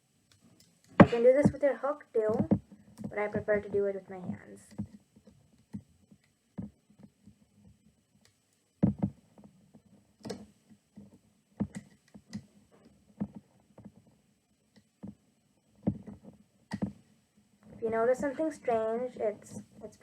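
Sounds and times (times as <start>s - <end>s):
soft plastic clicks and knocks: 4.6s - 15.2s.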